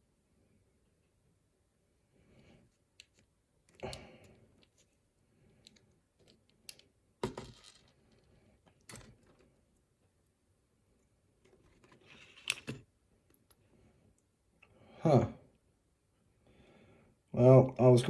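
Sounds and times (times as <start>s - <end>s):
metal lock parts clicking: 11.7s - 12.8s.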